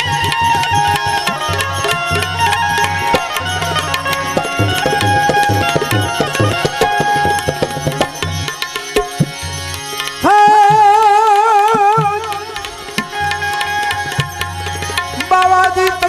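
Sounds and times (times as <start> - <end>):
tabla rhythm: 0.0 - 16.0
sustained melody notes: 1.0 - 15.7.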